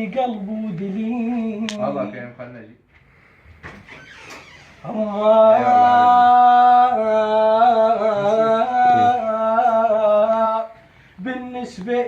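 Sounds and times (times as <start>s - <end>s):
man singing a long held note: 4.9s - 10.7s.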